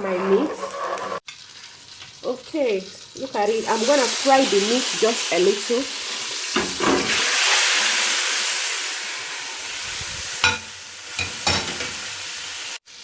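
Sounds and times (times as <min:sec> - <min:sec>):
meat sizzling in hot oil: 0:00.4 - 0:13.0.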